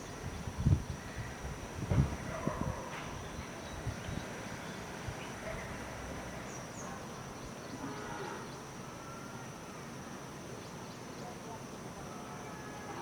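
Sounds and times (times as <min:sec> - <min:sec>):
high-pitched insect drone: 0:05.9 - 0:13.0.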